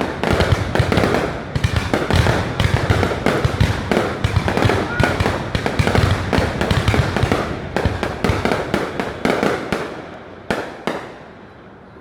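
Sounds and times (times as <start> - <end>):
fireworks bangs and crackle: 0.0 - 11.6.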